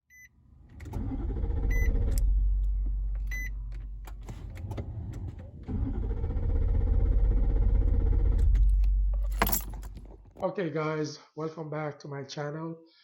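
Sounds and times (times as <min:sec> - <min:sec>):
engine starter cranking: 0:00.7 - 0:10.4.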